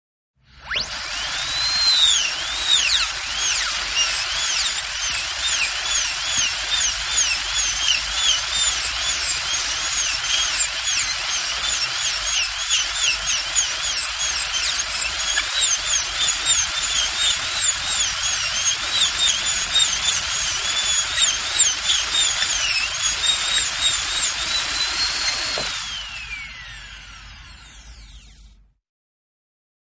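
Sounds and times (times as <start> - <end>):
dentist's drill whining: 0.5 - 28.6.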